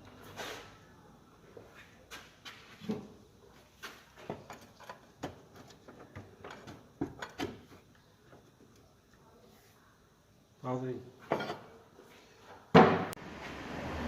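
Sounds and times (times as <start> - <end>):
metal parts and tools set down: 11.2 - 11.7.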